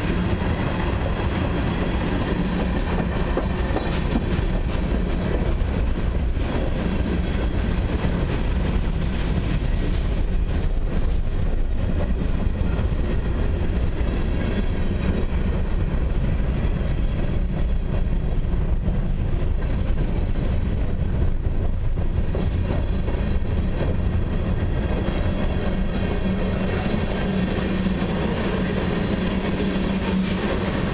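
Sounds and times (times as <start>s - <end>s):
freight train wheels on rails: 0.0s - 30.9s.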